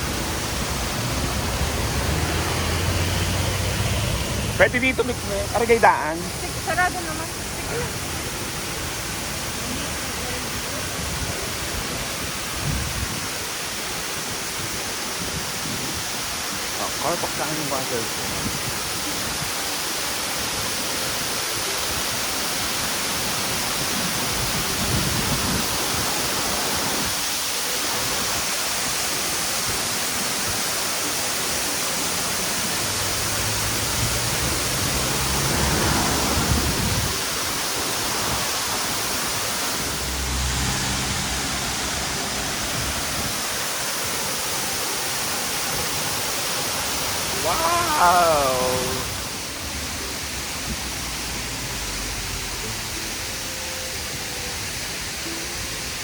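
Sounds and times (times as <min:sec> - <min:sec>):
low rumbles: 0:00.0 - 0:08.1
waterfall rushing: 0:00.0 - 0:56.0.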